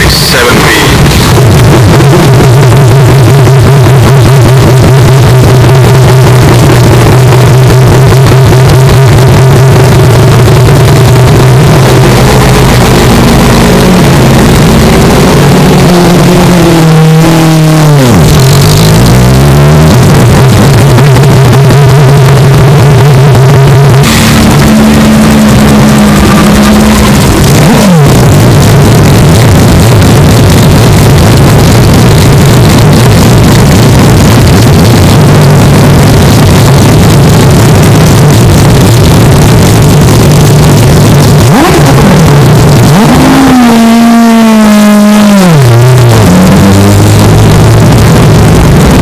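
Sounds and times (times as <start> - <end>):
rotary engine idling: 0.0 - 49.0.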